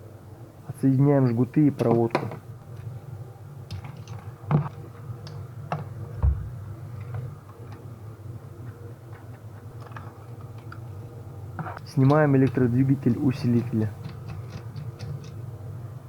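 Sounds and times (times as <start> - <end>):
steady low hum: 0.0 - 16.0
dull thump: 6.2 - 6.5.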